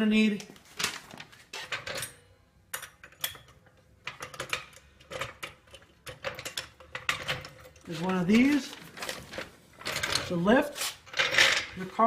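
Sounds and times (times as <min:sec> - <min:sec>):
metal tools clicking and clacking: 0:01.7 - 0:08.6, 0:09.3 - 0:11.9.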